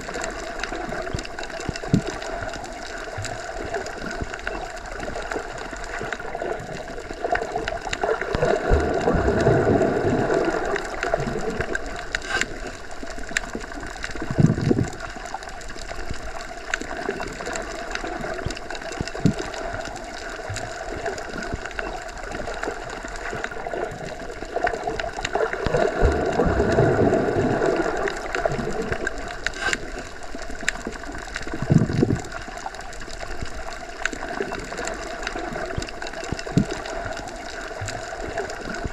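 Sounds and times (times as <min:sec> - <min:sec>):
faint clicks: 0:00.0 - 0:38.9
low surge of water: 0:00.0 - 0:38.9
underwater gurgling hiss: 0:00.0 - 0:38.9.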